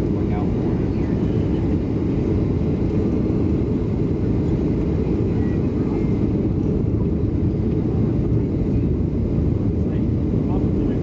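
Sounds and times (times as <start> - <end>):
airplane cabin rumble: 0.0 - 11.0.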